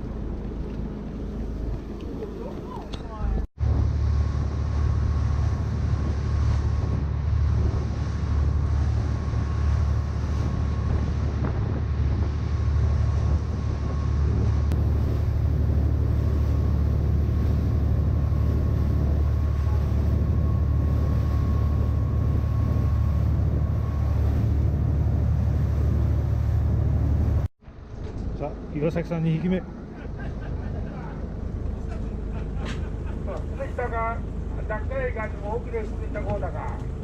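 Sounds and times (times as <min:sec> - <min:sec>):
wind buffeting microphone: 0:00.0 - 0:27.5
boat engine droning: 0:00.0 - 0:37.0.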